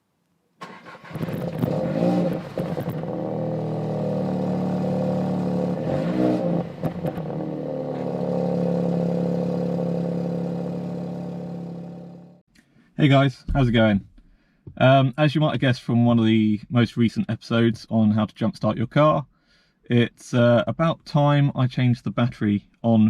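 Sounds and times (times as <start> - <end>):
car engine revving: 0.6 - 12.4.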